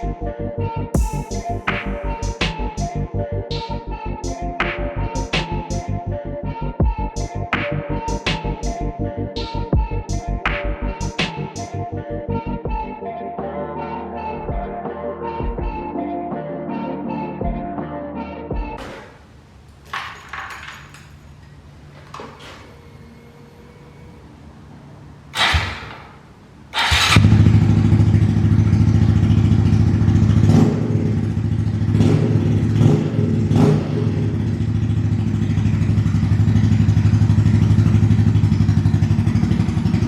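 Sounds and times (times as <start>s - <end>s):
motorcycle engine idling: 1.0s - 2.4s, 26.8s - 40.0s
motorcycle engine cranking: 25.3s - 40.0s.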